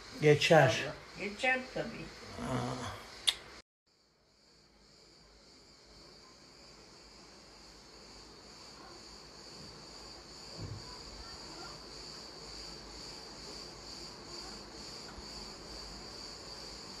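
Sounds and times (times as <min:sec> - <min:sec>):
insects chirring: 0:00.0 - 0:17.0
dull low thump: 0:10.5 - 0:11.0.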